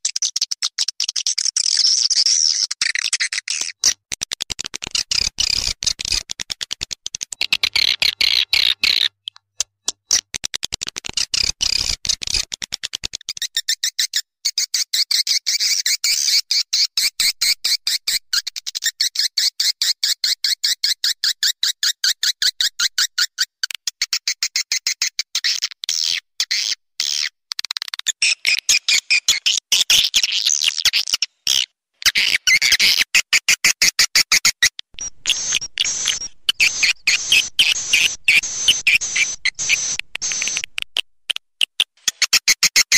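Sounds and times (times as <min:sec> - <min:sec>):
swiftlets twittering: 0:35.0 - 0:40.7.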